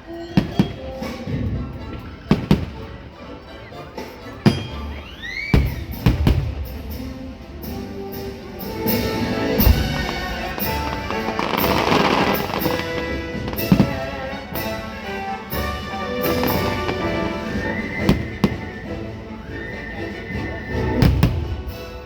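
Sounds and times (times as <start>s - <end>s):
music soundtrack: 0.0s - 22.0s
rising firework whistles: 5.0s - 6.1s, 16.3s - 21.8s
firework crackling: 8.2s - 19.4s
firework shells bursting: 8.7s - 18.9s.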